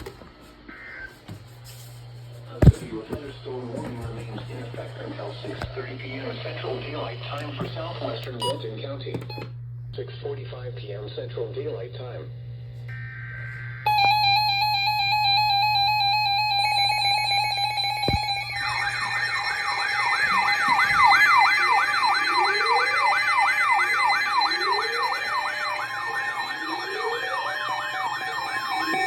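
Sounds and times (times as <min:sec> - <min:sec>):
electronic alarm tones: 0:07.0 - 0:09.5, 0:12.9 - 0:29.0
siren-like warble: 0:12.9 - 0:29.0.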